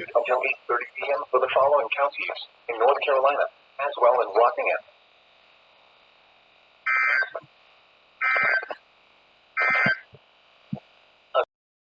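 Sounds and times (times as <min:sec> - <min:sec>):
digital data tone bursts: 0:06.8 - 0:07.4, 0:08.2 - 0:08.8, 0:09.6 - 0:10.2.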